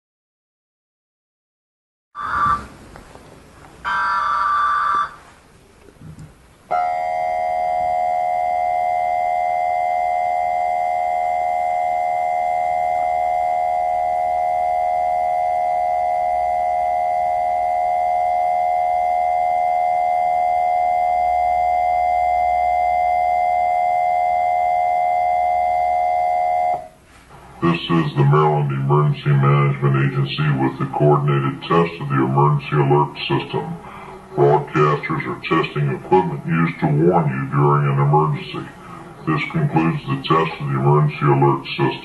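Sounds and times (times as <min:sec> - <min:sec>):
two-tone attention signal: 0:02.2 - 0:02.7, 0:03.8 - 0:05.2.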